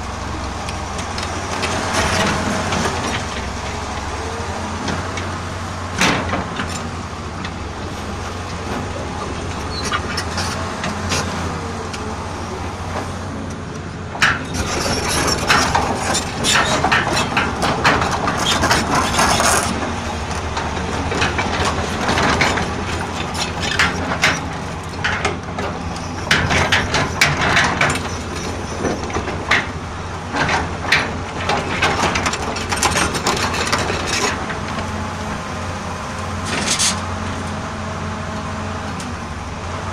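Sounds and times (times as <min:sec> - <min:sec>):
excavator diesel engine running: 0:00.0 - 0:39.9
metallic clanks and scraping: 0:14.2 - 0:34.9, 0:36.4 - 0:37.4.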